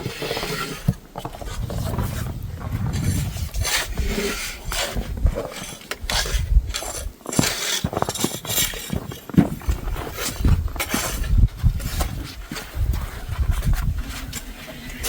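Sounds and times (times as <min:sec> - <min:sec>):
scraping crunching strokes in snow: 0:00.0 - 0:09.0
low rumble: 0:01.4 - 0:04.2.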